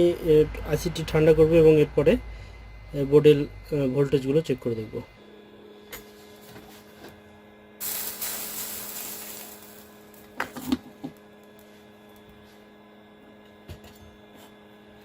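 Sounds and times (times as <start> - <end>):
electrical hum: 0.0 - 15.0
spray can hissing: 7.8 - 10.2.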